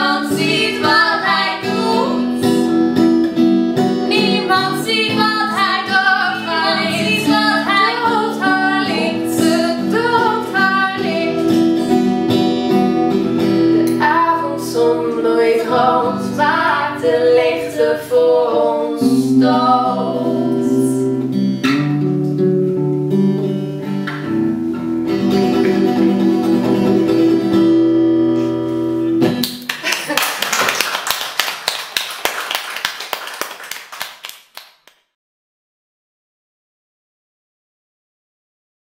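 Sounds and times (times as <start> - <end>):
people singing without words: 0.0 - 2.8, 4.1 - 11.9, 14.0 - 21.2
acoustic guitar: 0.0 - 29.8
people clapping: 29.2 - 35.2.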